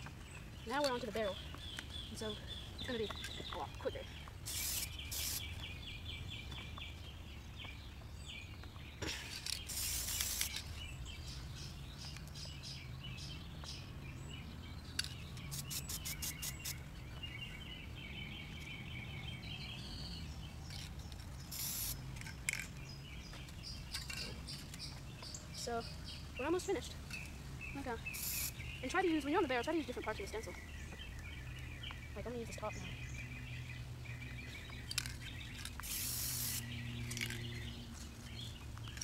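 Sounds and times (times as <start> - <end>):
birds chirping: 0.0 - 39.0
spray-paint can hissing: 4.4 - 5.6, 9.5 - 10.7, 15.4 - 16.8, 21.4 - 22.0, 28.1 - 28.6, 35.7 - 37.3
quick run of clicks: 9.4 - 10.7, 14.9 - 16.8.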